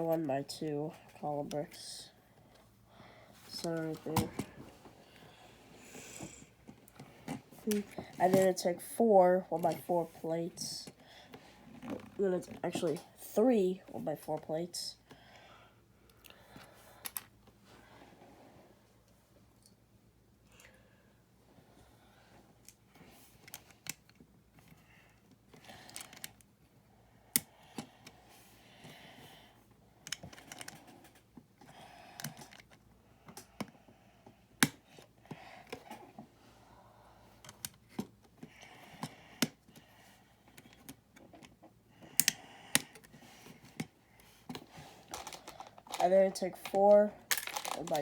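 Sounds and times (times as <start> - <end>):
rummaging of loose pieces: 45.0 - 48.0
plastic bricks clicking together: 46.6 - 48.0.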